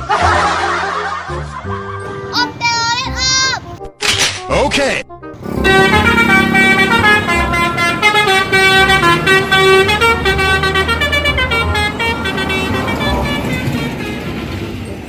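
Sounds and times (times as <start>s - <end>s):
bus musical horn playing: 5.4s - 15.0s
low engine hum: 5.4s - 15.0s.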